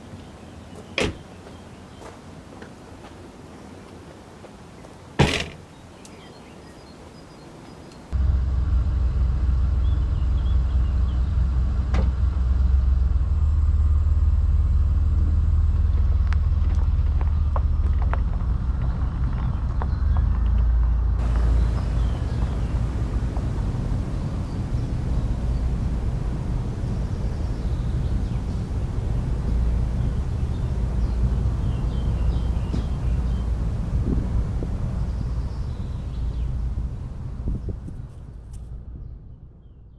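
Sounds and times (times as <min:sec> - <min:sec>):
car door shutting: 0:05.2 - 0:05.6, 0:21.2 - 0:35.1
light ticks and rattles: 0:21.2 - 0:36.4
car engine running and driving: 0:21.2 - 0:36.7.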